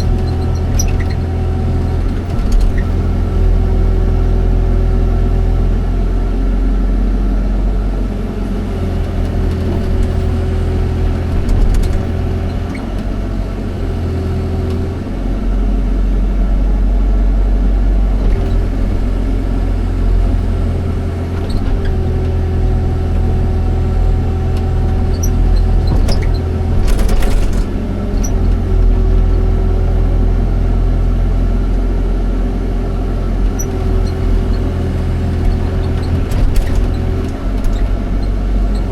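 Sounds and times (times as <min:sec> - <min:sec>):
excavator diesel engine rumbling: 0:00.0 - 0:38.9
short rattle: 0:24.7 - 0:28.6.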